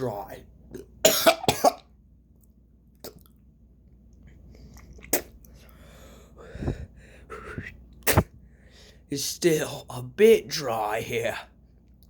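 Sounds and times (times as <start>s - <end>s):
person chewing food: 2.3s - 5.9s
wet mouth clicks: 3.0s - 3.4s, 4.6s - 5.6s.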